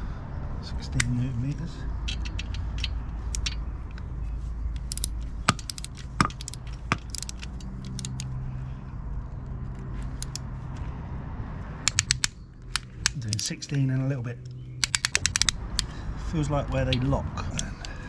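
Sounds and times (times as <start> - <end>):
torque wrench ratcheting: 2.0 - 3.6, 4.8 - 8.3, 11.9 - 13.3, 14.8 - 15.9
sharp torque wrench clicks: 2.0 - 4.0, 4.8 - 8.3, 10.1 - 10.4, 11.9 - 13.5, 14.4 - 15.9.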